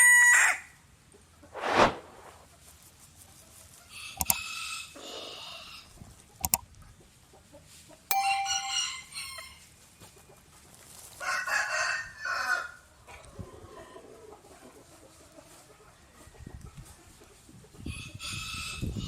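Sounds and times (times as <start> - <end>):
sharp click: 6.4 - 6.6
small rooster crowing: 11.2 - 12.8.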